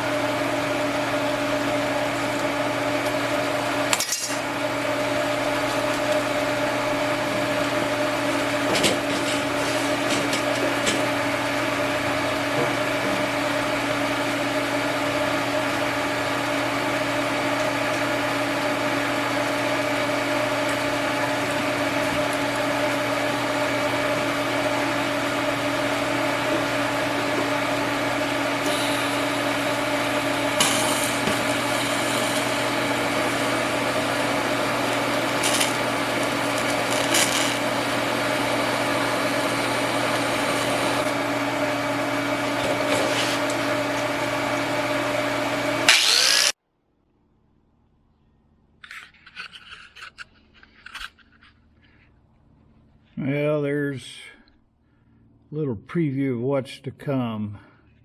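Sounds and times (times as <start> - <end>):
machine hum: 0.0 - 56.3
scraping or crackling bursts: 35.2 - 37.8.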